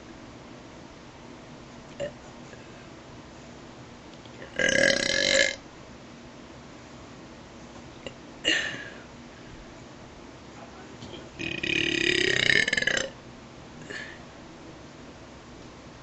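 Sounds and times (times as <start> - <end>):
person burping: 4.4 - 5.6, 8.5 - 9.0, 11.4 - 13.2.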